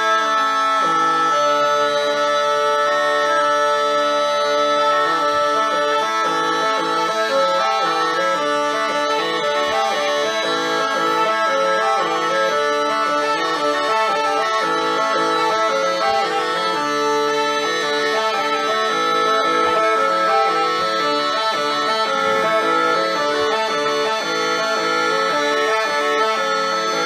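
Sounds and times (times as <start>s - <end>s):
bagpipes playing: 0.0s - 27.0s.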